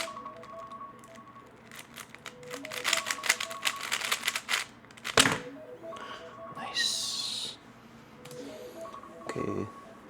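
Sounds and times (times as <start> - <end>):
rapid plastic puzzle cube clicks: 1.6 - 5.2.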